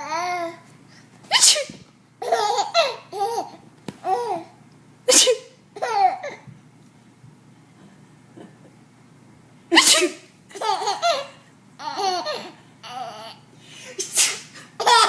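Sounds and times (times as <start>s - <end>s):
woman sneezing: 1.3s - 1.8s, 5.1s - 5.6s, 9.7s - 10.3s, 14.0s - 14.6s
baby laughing: 2.2s - 4.5s, 5.8s - 6.5s, 10.5s - 13.4s, 14.8s - 15.0s.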